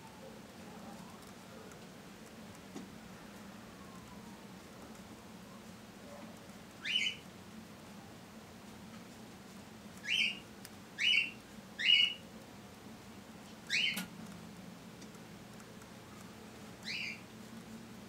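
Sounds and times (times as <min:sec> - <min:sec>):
faint steady hum: 0:00.0 - 0:18.0
small animal chirping: 0:06.8 - 0:07.2, 0:10.0 - 0:12.2, 0:13.7 - 0:14.0, 0:16.8 - 0:17.3.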